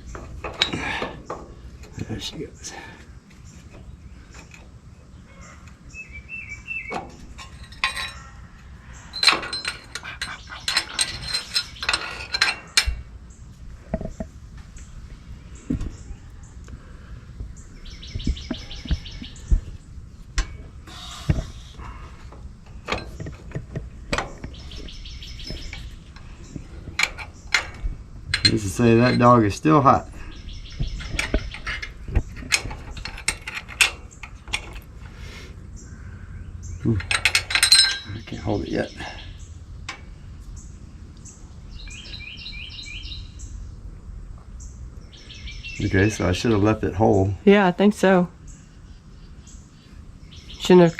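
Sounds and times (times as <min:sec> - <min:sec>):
low background rumble: 0:00.0 - 0:50.8
songbird chirping: 0:00.0 - 0:50.9
bird trilling: 0:05.2 - 0:07.0, 0:17.6 - 0:19.7, 0:24.4 - 0:26.6, 0:29.9 - 0:31.8, 0:40.6 - 0:43.6
knocks and clinks: 0:06.9 - 0:08.3, 0:09.1 - 0:13.0, 0:22.7 - 0:29.5, 0:36.8 - 0:38.3.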